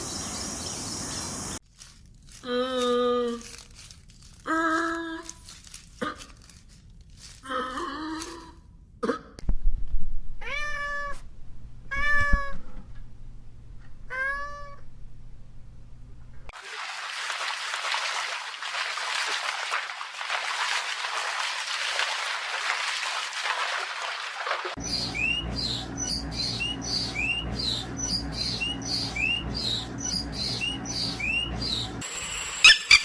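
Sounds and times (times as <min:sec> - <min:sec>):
cat meowing: 0:10.4 - 0:11.2, 0:11.9 - 0:12.6, 0:14.1 - 0:14.8.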